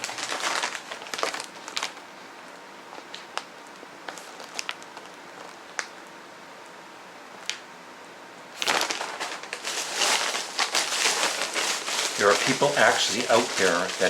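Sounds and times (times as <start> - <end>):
plastic bag crinkling: 0.0 - 2.1, 2.9 - 5.9, 8.6 - 14.0
faint crackles: 8.8 - 14.0.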